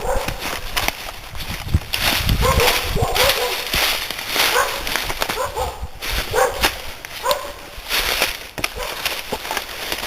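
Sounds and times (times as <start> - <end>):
dog barking: 0.0 - 0.4, 2.4 - 3.7, 4.5 - 7.6, 8.7 - 9.0.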